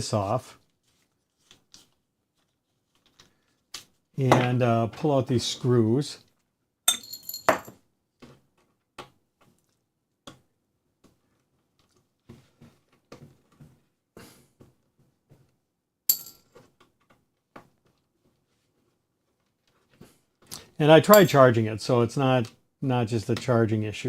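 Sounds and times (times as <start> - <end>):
ringing metallic clink: 6.9 - 7.7, 16.1 - 16.4, 21.1 - 21.4.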